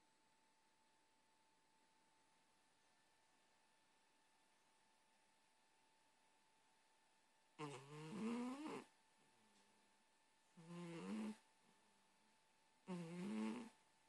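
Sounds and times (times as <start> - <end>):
cat snoring: 7.6 - 8.9, 10.6 - 11.4, 12.8 - 13.8.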